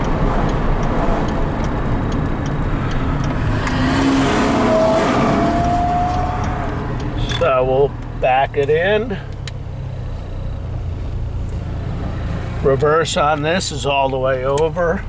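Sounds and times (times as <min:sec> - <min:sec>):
faint regular ticking: 0:00.0 - 0:11.6, 0:12.3 - 0:15.0
car engine running: 0:00.0 - 0:15.0
road and tyre noise: 0:00.0 - 0:15.0
thin whine: 0:02.0 - 0:07.6.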